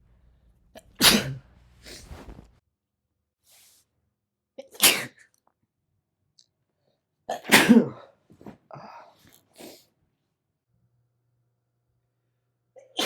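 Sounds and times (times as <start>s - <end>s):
person sneezing: 0.8s - 2.3s, 4.6s - 5.2s, 7.3s - 8.9s.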